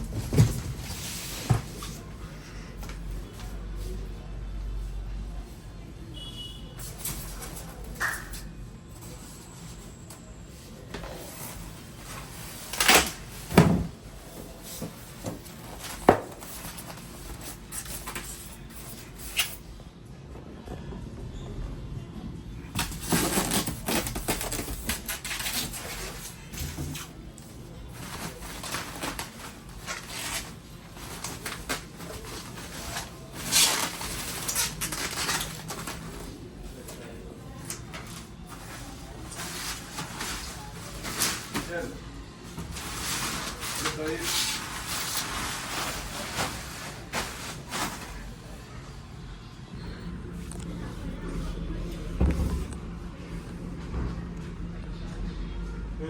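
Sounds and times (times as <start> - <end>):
knocks and thumps of handling: 0.0 - 2.2, 12.8 - 19.0
packaging rustling and scraping: 0.0 - 4.0, 9.0 - 19.7, 22.8 - 48.7.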